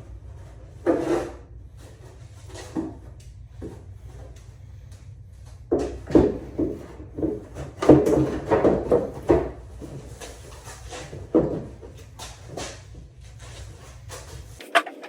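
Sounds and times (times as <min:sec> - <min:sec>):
parts knocking and rubbing: 0:14.4 - 0:15.0.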